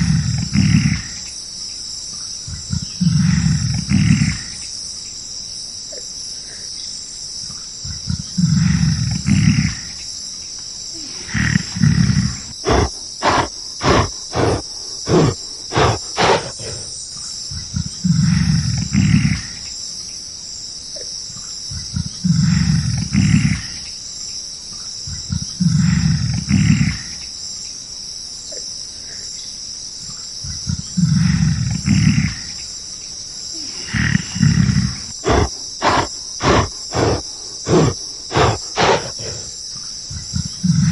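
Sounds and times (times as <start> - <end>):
large animal deep calls: 0.0 - 1.3, 2.5 - 4.6, 7.9 - 10.0, 11.0 - 17.0, 30.5 - 32.7, 33.5 - 40.9
insects buzzing: 0.0 - 40.9
short rapid grunts: 11.0 - 17.0, 33.6 - 39.6, 40.2 - 40.9.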